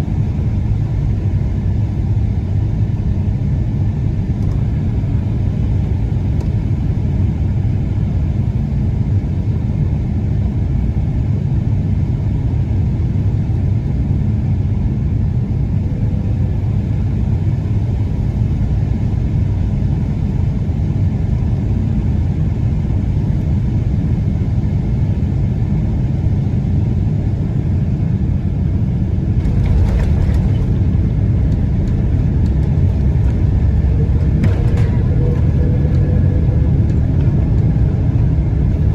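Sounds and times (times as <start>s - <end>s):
airplane cabin rumble: 0.0s - 38.9s
brief rattling: 29.4s - 37.4s.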